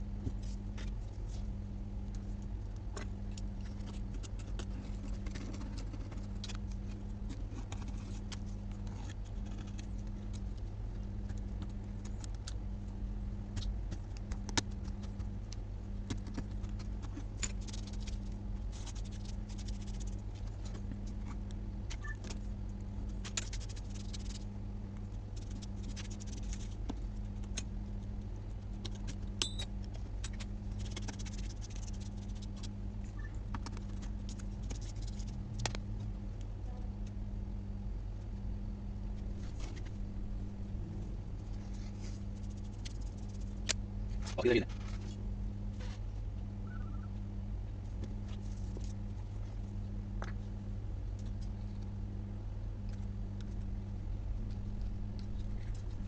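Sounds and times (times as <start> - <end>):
low electrical hum: 0.0 - 56.0
faint pulsing tone: 23.8 - 56.0
small metal tools clicking and scraping: 29.4 - 30.4.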